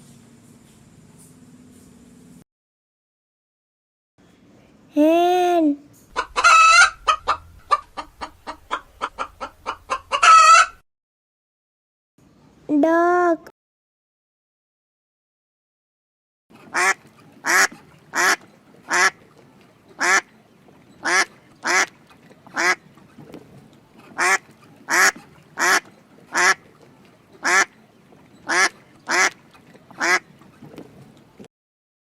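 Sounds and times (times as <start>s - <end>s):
duck quacking: 6.1s - 10.8s, 16.6s - 19.3s, 19.9s - 20.4s, 21.0s - 22.9s, 24.0s - 27.8s, 28.4s - 30.3s.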